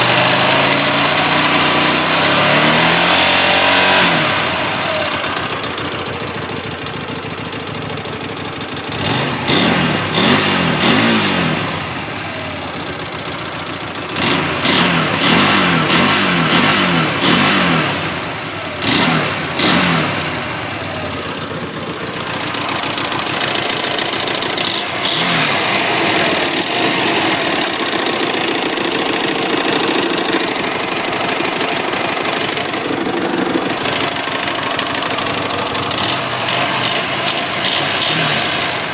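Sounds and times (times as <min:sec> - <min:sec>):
engine clicking clatter: 0:00.0 - 0:38.9
motorcycle engine idling: 0:00.0 - 0:38.9
motorcycle engine revving: 0:00.0 - 0:38.9.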